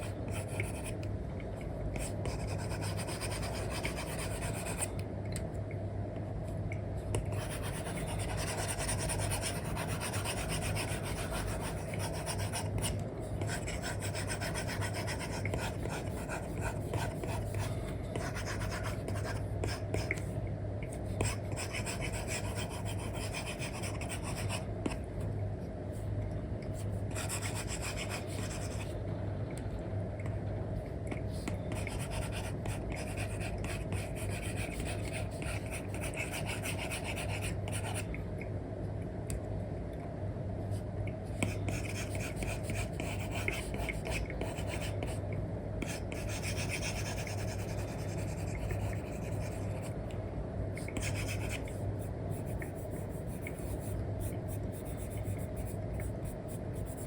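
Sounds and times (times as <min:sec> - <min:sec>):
steady low hum: 0:00.0 - 0:57.0
stylus scratching on screen film: 0:50.9 - 0:57.0.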